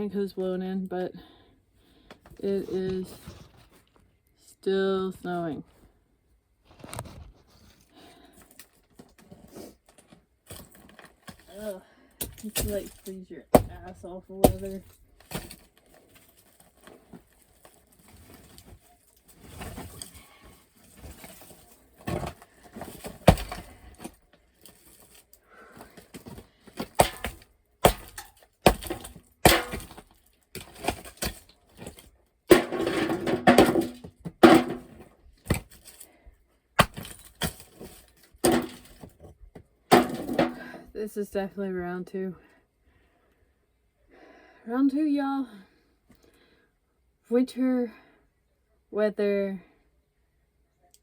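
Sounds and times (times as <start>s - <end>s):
coal knocking and clattering: 10.5s - 15.7s, 18.1s - 24.2s, 25.8s - 36.0s, 36.8s - 40.9s.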